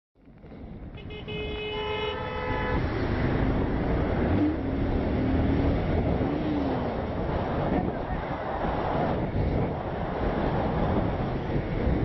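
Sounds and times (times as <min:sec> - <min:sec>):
steady traffic: 0:00.2 - 0:12.0
wind noise: 0:00.2 - 0:12.0
vehicle horn honking: 0:01.0 - 0:02.9.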